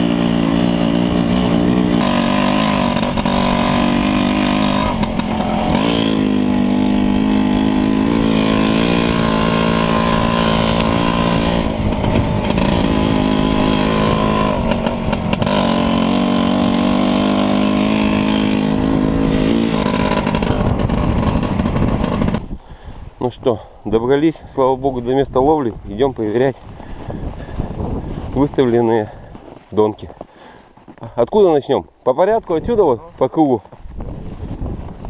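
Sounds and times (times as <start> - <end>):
small engine under load: 0.0 - 22.5.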